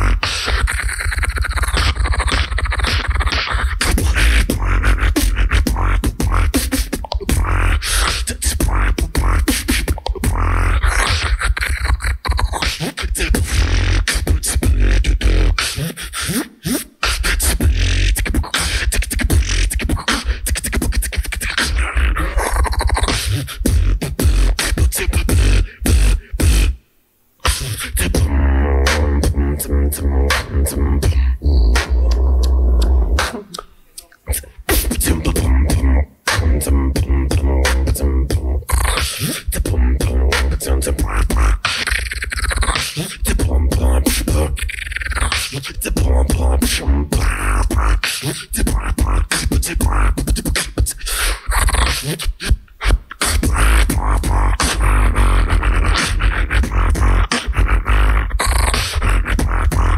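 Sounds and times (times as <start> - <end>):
beatboxing: 0.0 - 59.9
wavering bass tone: 28.0 - 33.6.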